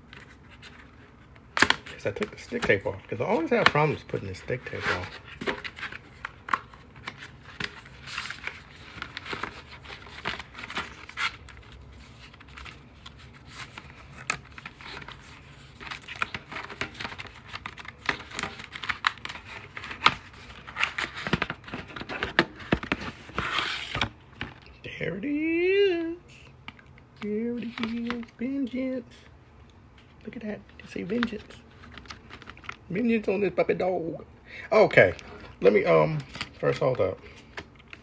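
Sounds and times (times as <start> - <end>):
plastic packaging crinkling and tearing: 0.1 - 24.7, 30.9 - 32.9.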